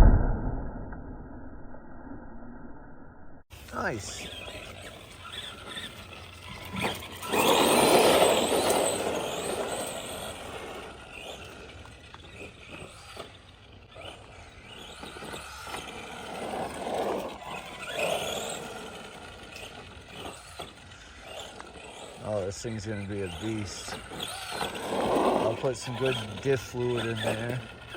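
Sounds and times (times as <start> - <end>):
tyres running over ground: 3.5 - 27.9
electric motor whining: 3.6 - 27.9.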